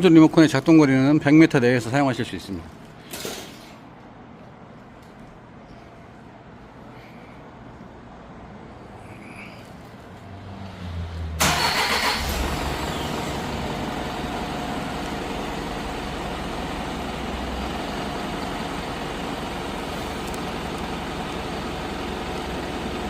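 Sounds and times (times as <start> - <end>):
diesel engine starting and idling: 10.7 - 23.0
starter motor cranking: 11.4 - 13.4.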